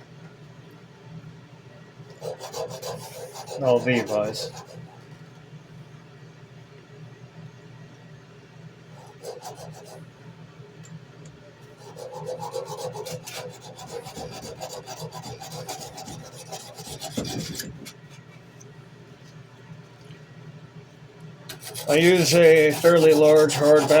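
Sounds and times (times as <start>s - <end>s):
sandpaper rasping on knife blade: 2.2s - 4.8s, 9.0s - 10.0s, 11.8s - 18.0s, 21.5s - 24.0s.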